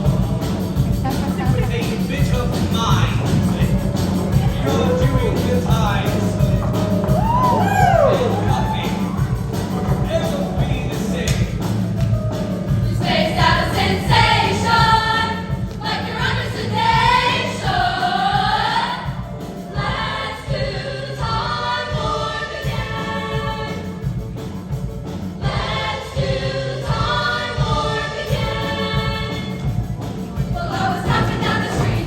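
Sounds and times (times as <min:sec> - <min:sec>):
music accompaniment: 0:00.0 - 0:32.0
girls' choir singing: 0:12.8 - 0:24.1, 0:25.4 - 0:29.8, 0:30.4 - 0:32.0.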